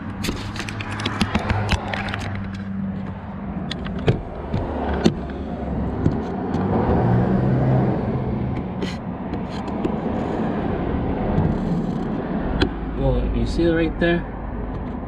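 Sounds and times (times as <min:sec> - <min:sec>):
camera handling clicks and knocks: 0:00.0 - 0:05.4, 0:08.5 - 0:10.1.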